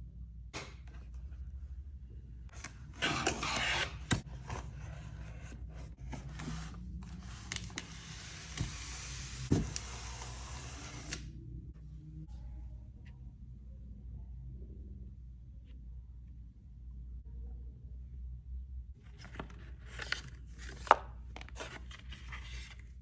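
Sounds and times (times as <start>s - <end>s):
cardboard sliding scrape: 2.6s - 11.2s
cardboard rustling: 19.1s - 23.0s.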